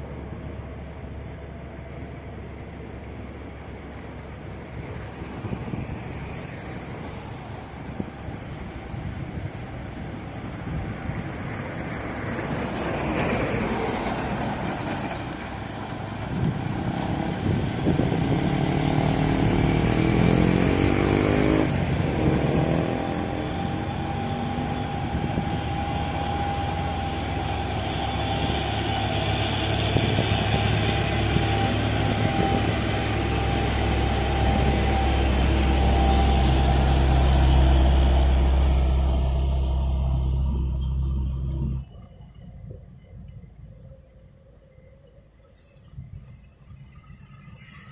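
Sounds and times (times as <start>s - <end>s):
heavy vehicle engine rumble: 0.0s - 47.9s
street traffic: 0.0s - 47.9s
engine revving: 16.8s - 41.8s.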